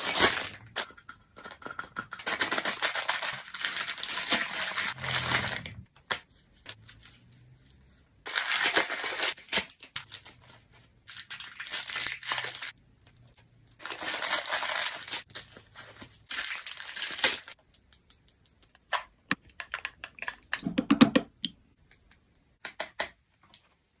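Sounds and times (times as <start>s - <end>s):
plastic packaging crinkling and tearing: 0.0s - 5.7s, 8.3s - 12.8s, 13.8s - 17.6s.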